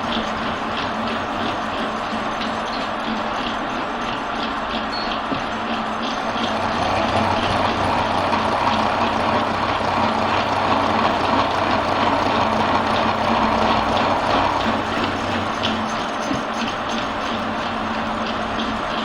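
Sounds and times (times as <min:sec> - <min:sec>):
milling machine cutting metal: 0:04.0 - 0:19.0.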